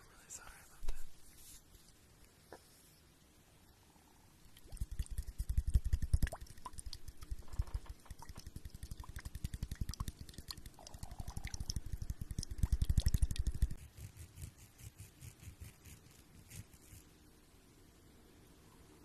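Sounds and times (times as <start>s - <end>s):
stomach growling: 10.7s - 11.8s.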